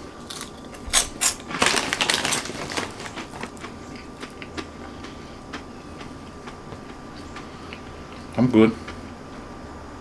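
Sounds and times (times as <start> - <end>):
pork rinds crunching: 0.0 - 4.7.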